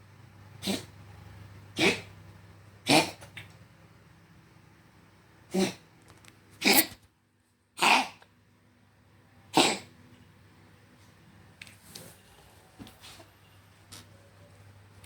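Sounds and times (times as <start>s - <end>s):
cat coughing: 0.6s - 0.9s, 1.8s - 2.1s, 2.8s - 3.2s, 7.8s - 8.2s, 9.5s - 9.9s.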